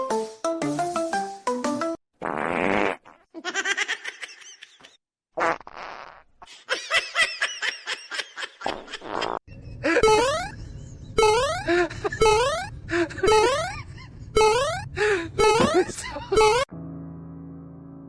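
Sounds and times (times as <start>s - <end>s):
fart-like buzzing: 2.2s - 3.3s, 5.4s - 6.3s, 8.8s - 9.4s, 11.2s - 12.7s.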